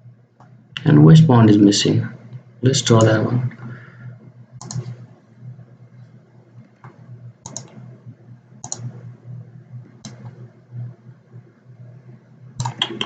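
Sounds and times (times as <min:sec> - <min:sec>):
faint low hum: 0:00.0 - 0:13.0
computer mouse clicking: 0:04.6 - 0:05.1, 0:06.6 - 0:08.0, 0:08.6 - 0:09.2, 0:10.0 - 0:10.5, 0:12.6 - 0:13.0.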